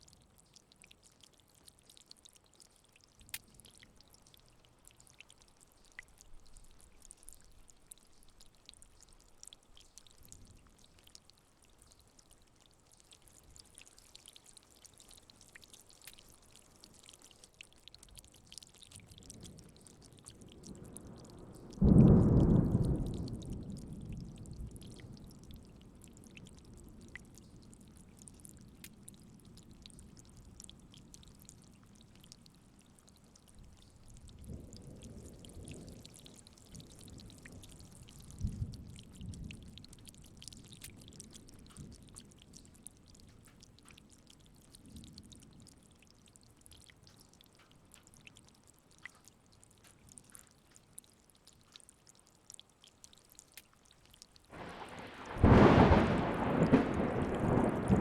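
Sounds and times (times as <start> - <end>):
light rain falling: 0.0 - 58.0
raindrops ticking: 0.0 - 58.0
distant thunder rumbling: 54.6 - 58.0.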